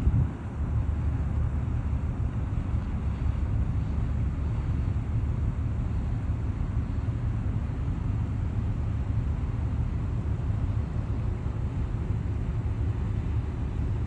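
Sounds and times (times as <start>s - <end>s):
wind buffeting microphone: 0.0s - 2.4s.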